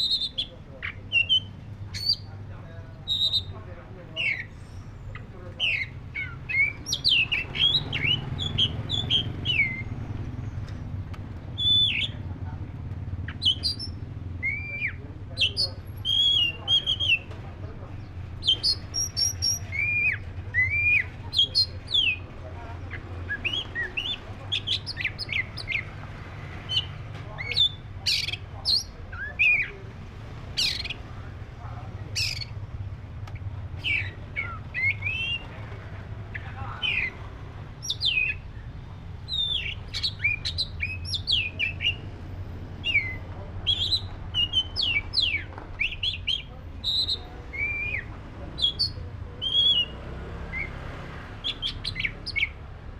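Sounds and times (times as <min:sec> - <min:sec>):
bird singing whistled notes: 0:00.0 - 0:02.3, 0:03.1 - 0:03.6, 0:04.2 - 0:10.0, 0:11.6 - 0:12.3, 0:13.3 - 0:17.3, 0:18.4 - 0:22.2, 0:23.2 - 0:25.9, 0:32.2 - 0:32.6, 0:33.4 - 0:35.6, 0:37.8 - 0:42.1, 0:42.8 - 0:50.8, 0:51.4 - 0:52.6.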